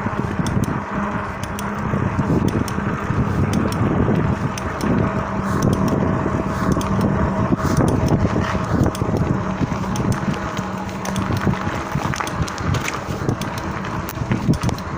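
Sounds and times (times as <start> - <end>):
bike crank clicking: 0.0 - 14.9
rolling and wind noise: 0.0 - 14.9
steady low hum: 0.0 - 14.9.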